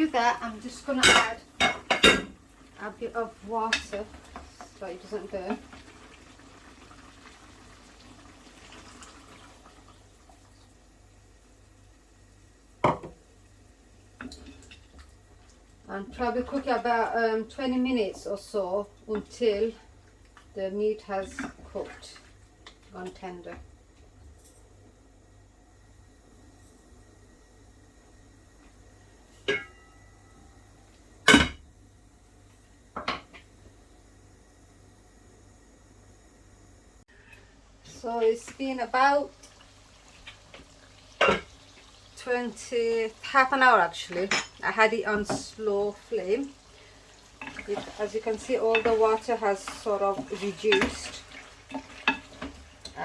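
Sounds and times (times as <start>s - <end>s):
water splashing and hissing in hot pan: 0.0s - 20.6s, 38.3s - 53.0s
cookware clank: 12.8s - 13.2s, 29.4s - 30.0s.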